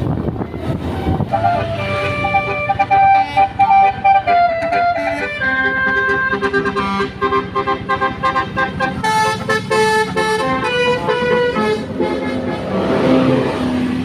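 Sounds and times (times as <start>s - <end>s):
musical bus horn playing tune: 0.0s - 13.9s.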